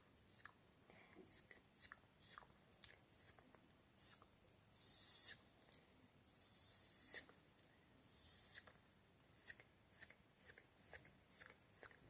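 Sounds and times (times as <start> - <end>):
tongue clicks and lip smacks: 0.2 - 0.6, 1.4 - 4.6, 9.4 - 12.0
hissing mouth sound: 3.1 - 5.4, 6.3 - 7.4, 8.0 - 8.8, 9.4 - 12.0.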